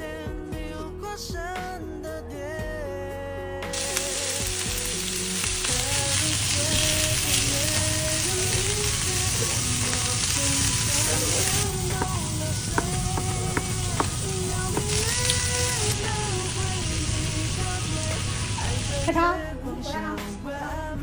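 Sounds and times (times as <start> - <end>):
food sizzling in frying pan: 3.8 - 19.1.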